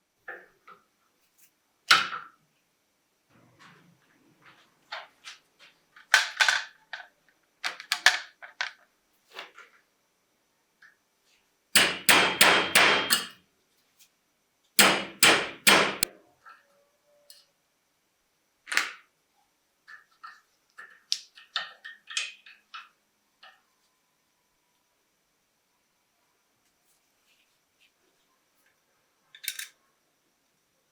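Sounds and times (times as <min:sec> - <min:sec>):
hammer strikes: 0:11.8 - 0:13.4, 0:14.8 - 0:16.1.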